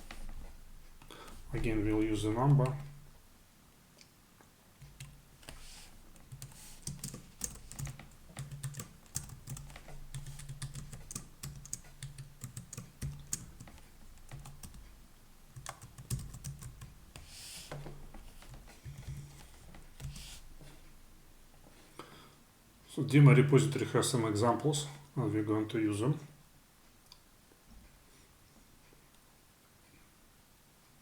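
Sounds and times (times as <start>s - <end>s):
keyboard typing: 4.8s - 17.3s, 18.4s - 20.4s.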